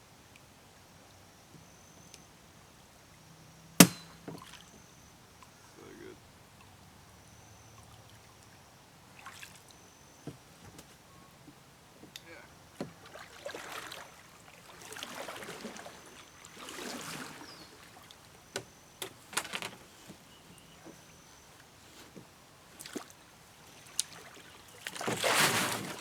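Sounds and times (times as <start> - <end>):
sharp knocks: 3.8 - 4.4
paddle swishing water: 12.0 - 26.0.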